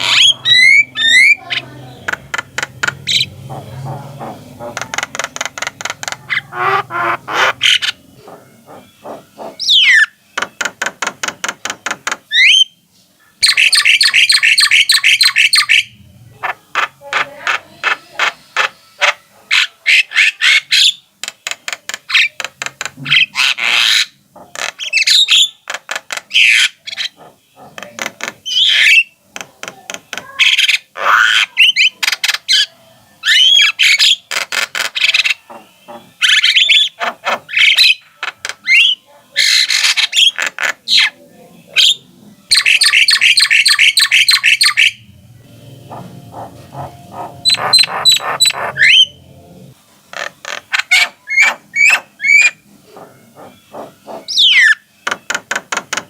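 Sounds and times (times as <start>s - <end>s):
myna bird singing: 0.0s - 56.0s
low hum: 45.0s - 49.7s.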